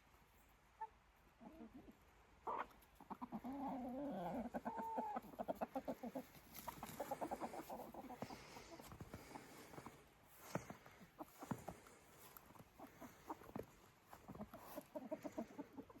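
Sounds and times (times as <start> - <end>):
chickens clucking: 0.6 - 16.0.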